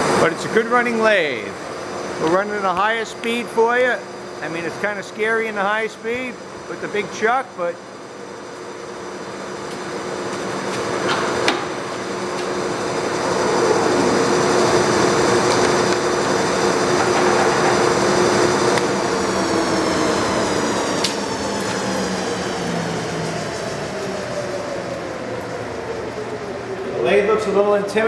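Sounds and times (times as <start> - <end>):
lathe gearing and motor whine: 0.0 - 28.0.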